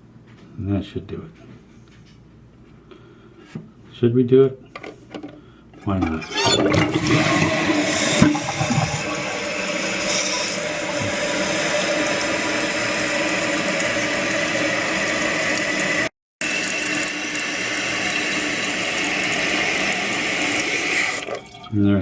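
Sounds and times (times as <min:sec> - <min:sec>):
toilet tank refilling: 0:05.8 - 0:21.8.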